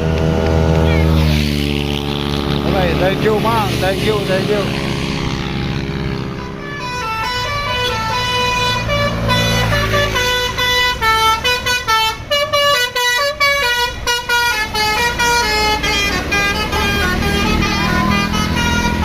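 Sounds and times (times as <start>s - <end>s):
bus engine running: 0.0s - 19.0s
melody horn playing a tune: 5.3s - 19.0s.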